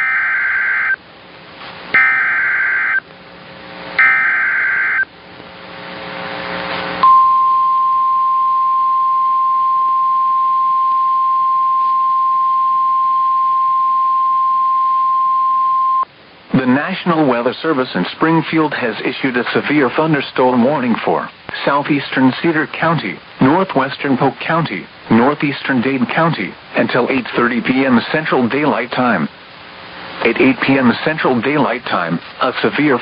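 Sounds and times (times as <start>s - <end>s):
steady warning alarm tone: 0.0s - 1.0s, 2.0s - 3.1s, 4.0s - 5.1s
warbling digital data tones: 2.0s - 3.0s, 4.0s - 5.1s
radio hiss: 4.9s - 7.0s, 16.5s - 33.0s.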